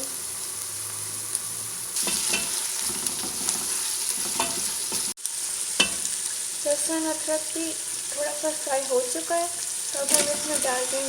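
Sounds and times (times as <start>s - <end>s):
paste sizzling in hot oil: 0.0s - 11.0s
spoon scraping a pot: 2.0s - 5.1s, 10.1s - 11.0s.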